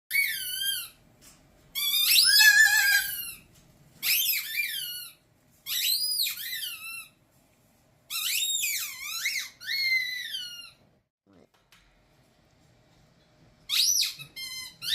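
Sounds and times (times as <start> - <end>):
cockatoo wavering call: 2.1 - 3.2.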